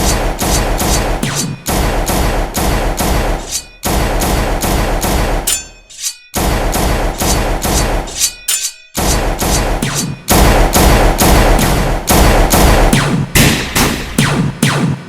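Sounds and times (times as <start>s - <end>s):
automatic gunfire bursts: 0.0s - 5.5s, 6.4s - 8.2s, 9.0s - 14.8s
thin metallic ringing: 3.3s - 3.9s, 5.3s - 6.5s, 7.1s - 9.2s.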